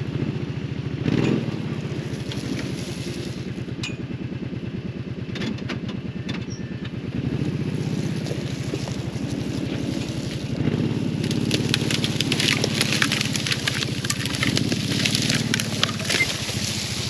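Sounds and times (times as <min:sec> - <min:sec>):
utility vehicle engine running: 0:00.0 - 0:17.0
sharp crackling clicks: 0:11.1 - 0:17.0.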